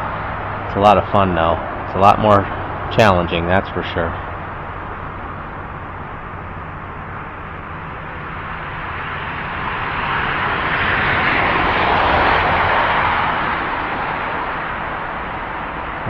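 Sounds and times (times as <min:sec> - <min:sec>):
distant passing engine rushing: 0:00.0 - 0:16.0.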